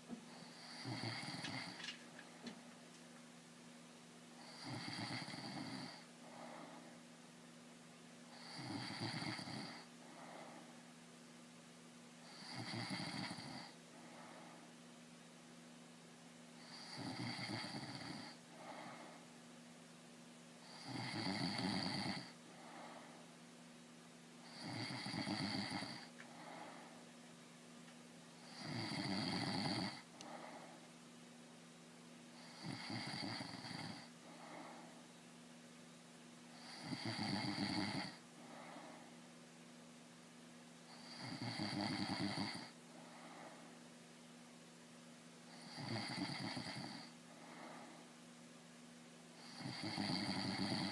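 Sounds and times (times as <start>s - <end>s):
man snoring: 0.4s - 1.9s, 4.4s - 6.7s, 8.4s - 10.5s, 12.3s - 13.8s, 16.6s - 19.0s, 20.6s - 23.0s, 24.5s - 26.8s, 28.4s - 30.6s, 32.4s - 34.8s, 36.6s - 39.0s, 40.9s - 43.5s, 45.5s - 47.9s, 49.4s - 50.9s.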